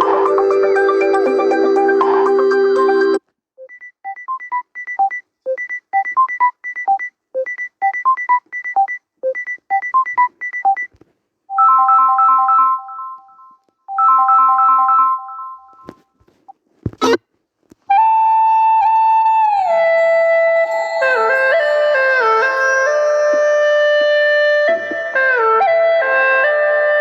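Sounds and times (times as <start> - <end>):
plucked ringtone melody: 0.0 - 3.2
ringing chords tone: 0.0 - 3.2.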